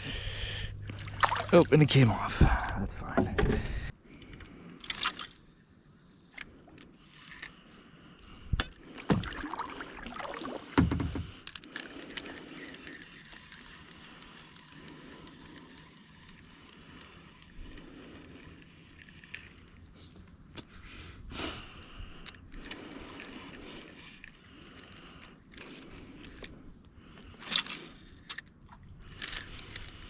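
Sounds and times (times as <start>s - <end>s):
water against hull: 0.0s - 3.9s, 8.8s - 11.4s.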